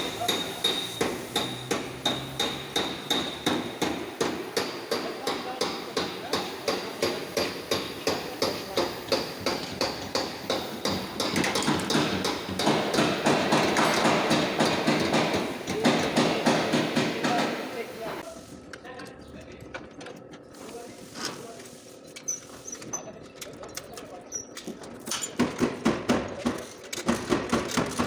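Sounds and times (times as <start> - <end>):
hammer on sheet metal: 0.0 - 18.2.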